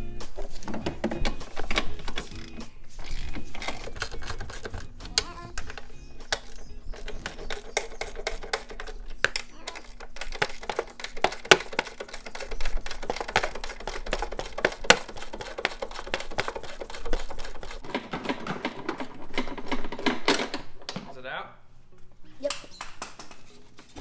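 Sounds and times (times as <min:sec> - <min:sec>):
hand ratchet clicking: 0:00.0 - 0:17.8.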